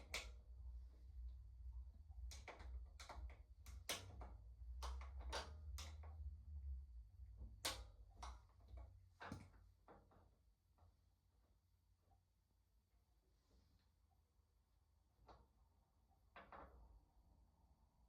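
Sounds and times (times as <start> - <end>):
steady low hum: 0.0 - 9.1
faint clicks and light knocks: 2.1 - 6.4.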